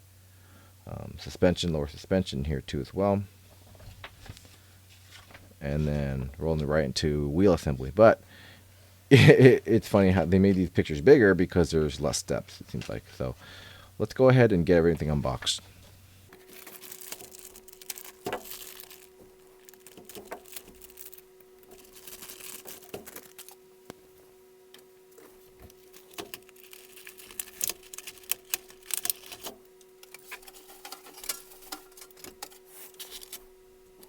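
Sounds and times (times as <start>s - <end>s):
faint steady hum: 0.0s - 34.0s
plastic and cardboard crinkling: 3.6s - 5.9s, 14.9s - 34.0s
plastic parts clicking and tapping: 16.6s - 23.6s, 25.6s - 33.4s.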